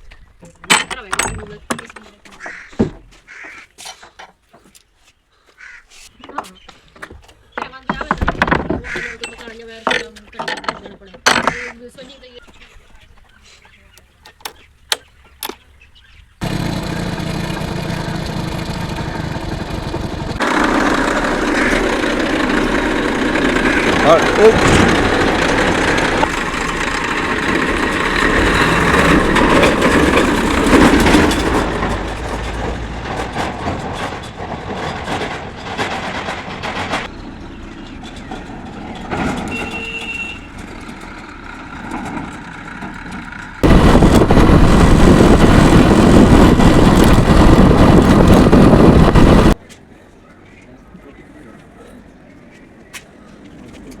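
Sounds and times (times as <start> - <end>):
loud even rush of noise: 16.4 - 34.0, 43.6 - 49.6
vehicle running with road noise: 16.4 - 49.6.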